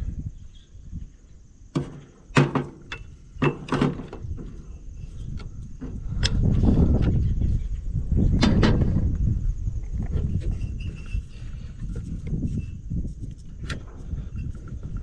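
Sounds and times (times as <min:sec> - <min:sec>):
tools knocking and clunking: 0:01.7 - 0:07.2
low rumble: 0:04.2 - 0:15.0.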